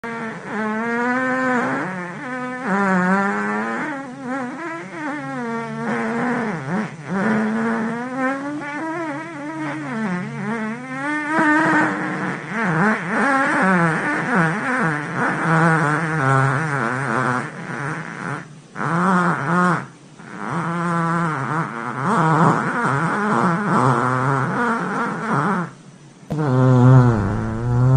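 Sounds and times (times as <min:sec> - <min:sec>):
fart sound effects: 0:26.3 - 0:27.9.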